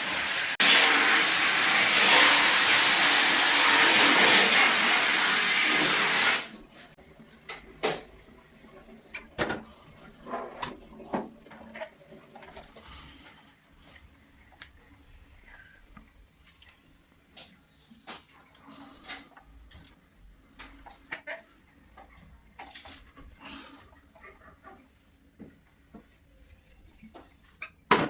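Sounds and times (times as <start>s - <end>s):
water spray jet hissing: 0.0s - 6.5s.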